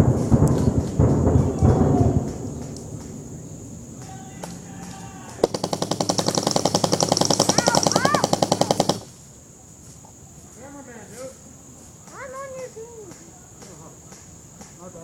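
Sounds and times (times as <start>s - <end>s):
airsoft gun full-auto burst: 4.4s - 9.2s.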